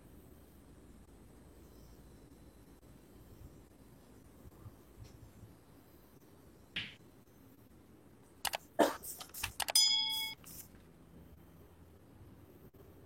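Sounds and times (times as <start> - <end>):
bright metallic ding: 9.7 - 10.4.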